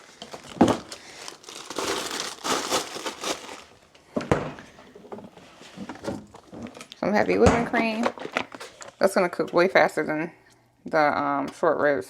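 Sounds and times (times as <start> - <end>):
food packaging crinkling: 0.0 - 4.1, 8.0 - 9.0.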